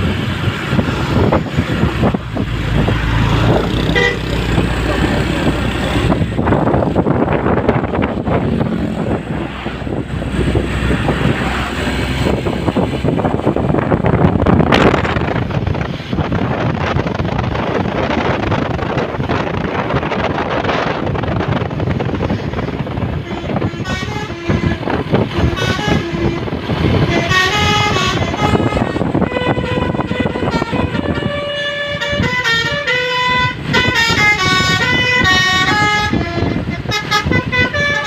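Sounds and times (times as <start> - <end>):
bus engine: 0.0 - 38.0
road traffic: 0.0 - 38.0
multi-tone bus horn tune: 3.5 - 9.4, 20.9 - 38.0.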